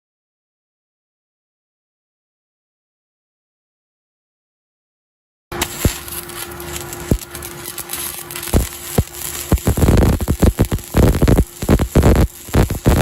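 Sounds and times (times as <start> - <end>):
arc welding crackling: 5.5 - 13.0.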